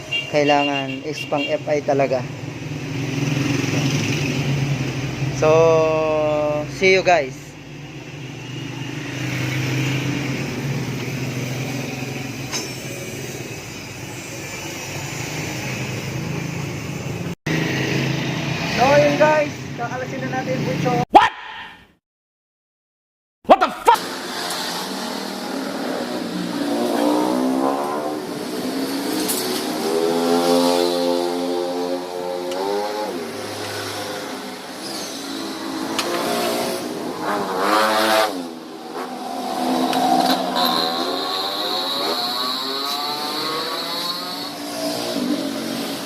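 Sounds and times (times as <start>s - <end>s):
vehicle engine humming: 34.3s - 43.6s.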